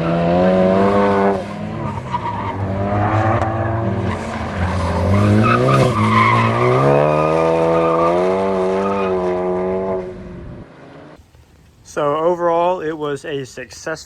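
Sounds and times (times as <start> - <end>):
car engine revving: 0.0 - 11.2.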